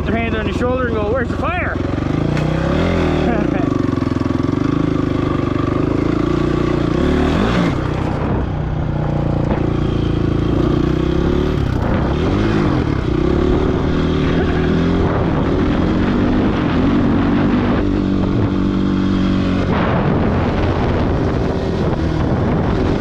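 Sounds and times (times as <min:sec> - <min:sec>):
dirt bike engine running: 0:00.0 - 0:23.0.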